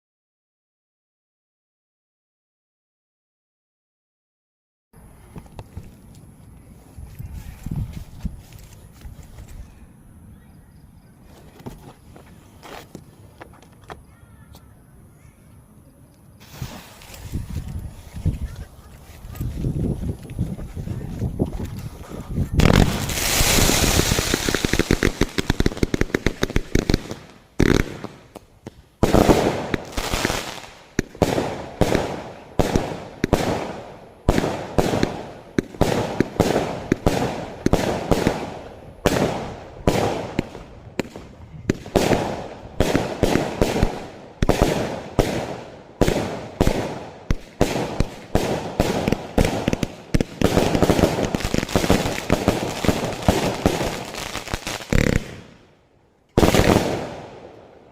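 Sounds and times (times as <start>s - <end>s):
fireworks crackling and bursting: 16.4s - 55.7s, 56.4s - 57.9s.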